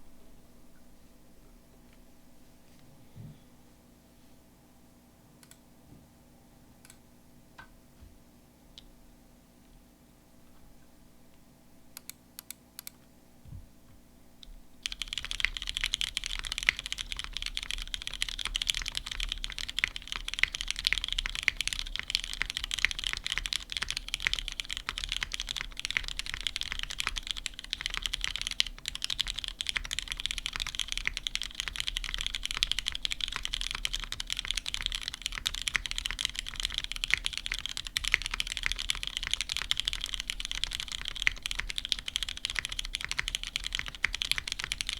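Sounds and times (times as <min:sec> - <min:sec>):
mechanical keyboard typing: 0:14.8 - 0:44.9.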